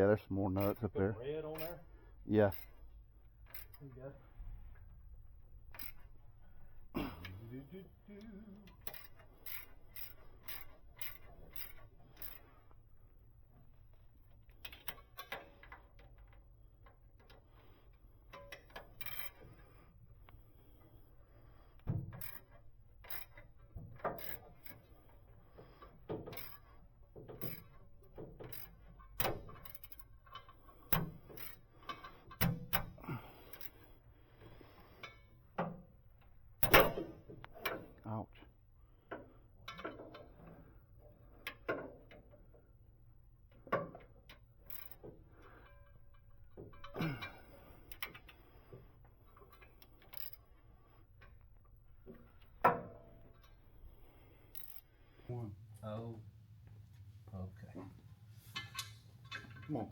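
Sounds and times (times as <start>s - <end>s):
tools clanking against metal: 0.5s - 1.8s, 21.8s - 33.8s, 43.5s - 50.5s, 57.8s - 59.9s.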